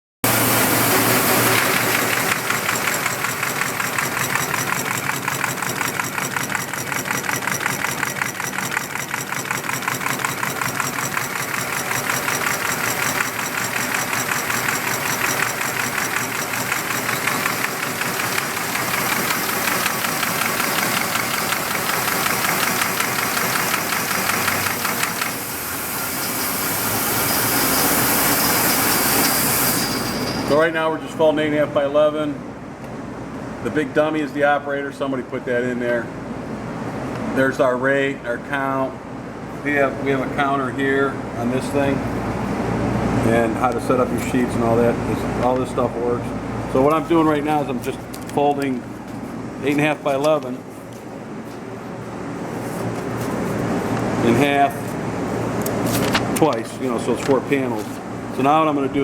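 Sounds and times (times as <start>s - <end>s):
paper folding machine clattering: 0.2s - 25.5s, 46.9s - 50.6s, 52.7s - 58.5s.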